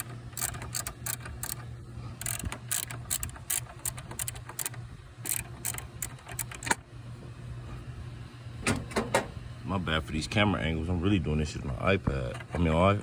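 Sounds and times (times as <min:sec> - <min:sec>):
ratchet wrench clicking: 0:00.0 - 0:01.6, 0:02.2 - 0:06.8
steady low hum: 0:00.0 - 0:13.0.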